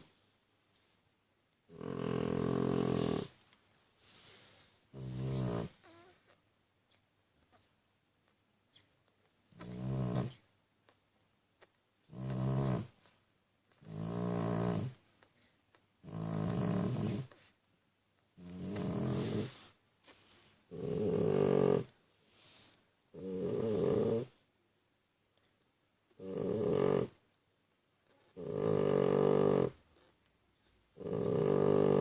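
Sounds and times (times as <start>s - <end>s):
animal snoring: 1.7s - 3.4s, 4.0s - 6.1s, 9.5s - 10.5s, 12.1s - 13.1s, 13.8s - 15.0s, 16.0s - 17.5s, 18.4s - 19.7s, 20.7s - 24.4s, 26.1s - 27.2s, 28.3s - 30.1s, 31.0s - 32.0s.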